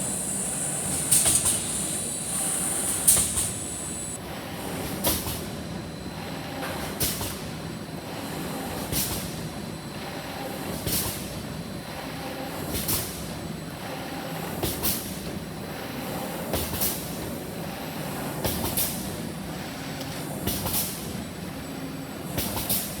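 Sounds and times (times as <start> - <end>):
cutting machine humming: 0.0 - 4.2
machine sharp double stroke: 0.0 - 4.2.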